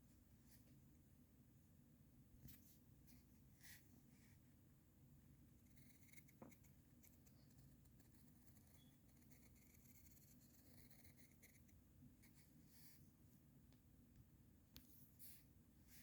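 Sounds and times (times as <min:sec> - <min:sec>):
pencil scratching on paper: 0:05.6 - 0:13.0.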